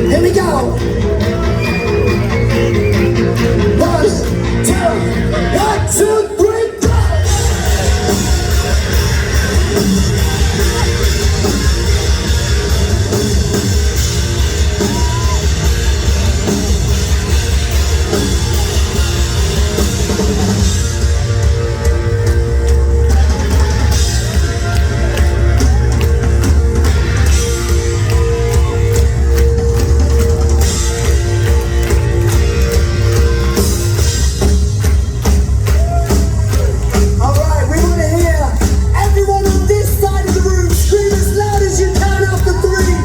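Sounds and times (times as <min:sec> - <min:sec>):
rock band playing live: 0:00.0 - 0:43.0.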